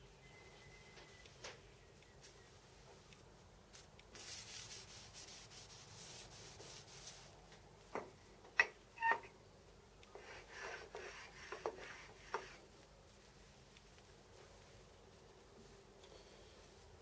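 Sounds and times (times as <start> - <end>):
hand rubbing metal part: 10.2 - 12.6.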